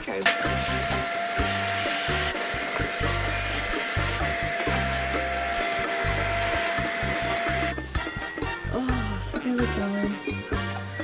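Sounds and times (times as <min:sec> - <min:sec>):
background music with beat: 0:00.0 - 0:11.0
vacuum cleaner running: 0:00.2 - 0:07.8.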